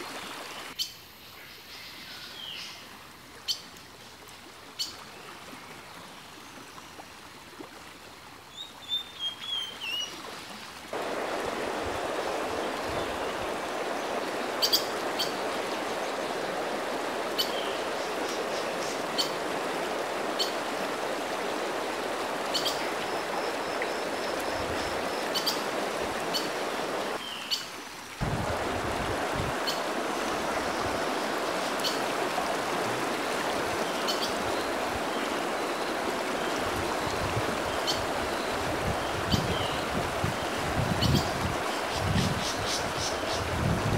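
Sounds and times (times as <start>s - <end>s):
creek water rushing: 0.0s - 0.9s, 1.6s - 43.9s.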